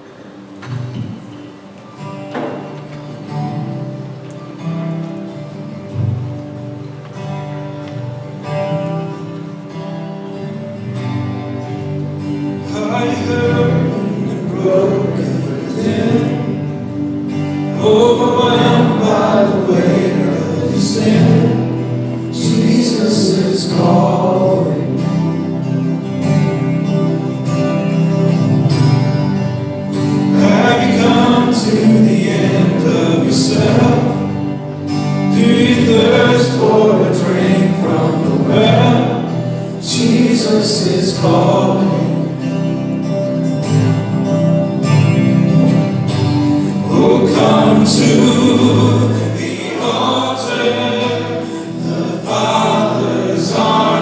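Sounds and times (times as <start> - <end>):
worship band playing: 0.0 - 54.0
person singing: 17.7 - 25.2, 30.2 - 42.5, 46.7 - 54.0.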